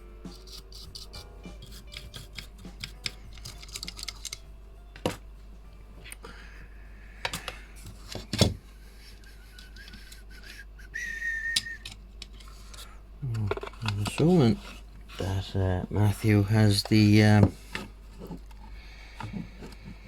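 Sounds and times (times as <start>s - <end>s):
thin steady whistling tone: 9.0s - 12.0s.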